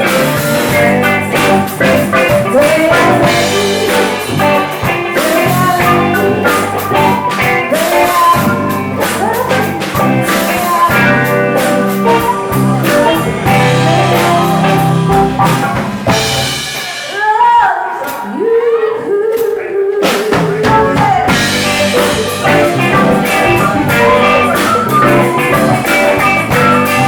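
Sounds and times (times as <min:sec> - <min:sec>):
sliding guitar notes: 0:00.0 - 0:16.8, 0:20.8 - 0:27.0
live soul band playing: 0:00.0 - 0:18.0, 0:18.7 - 0:27.0.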